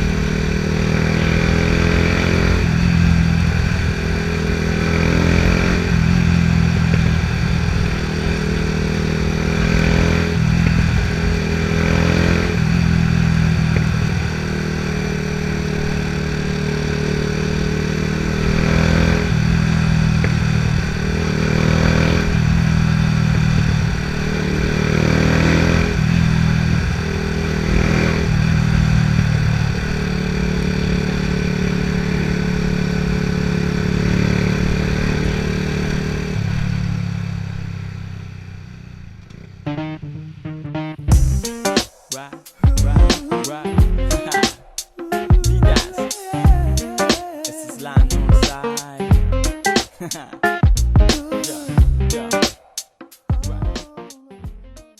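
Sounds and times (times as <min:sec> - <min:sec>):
exhaust crackles and pops: 0:00.0 - 0:40.2
motorcycle engine revving: 0:00.0 - 0:40.4, 0:41.0 - 0:53.9.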